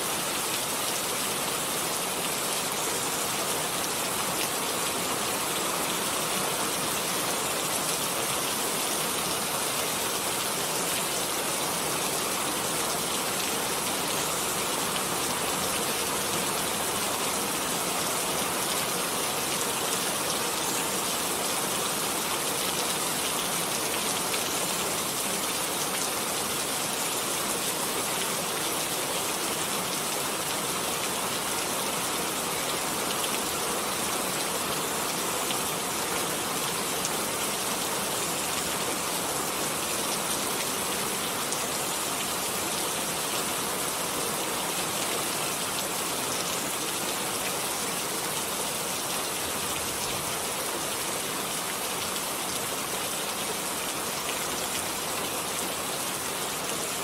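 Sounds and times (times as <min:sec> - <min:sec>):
steady rain falling: 0:00.0 - 0:57.0.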